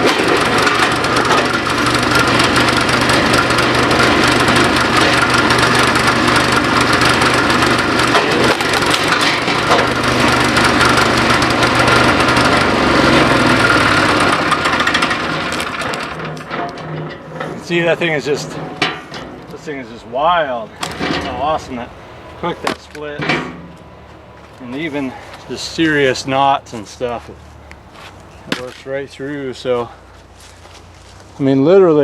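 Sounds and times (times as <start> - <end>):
wood cracking as it splits: 0.0 - 16.8
small gasoline engine running: 0.0 - 22.7.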